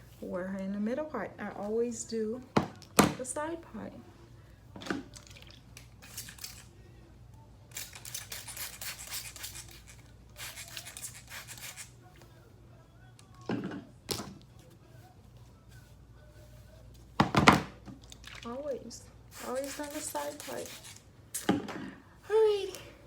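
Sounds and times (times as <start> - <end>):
wet hair rustling: 19.3 - 21.5.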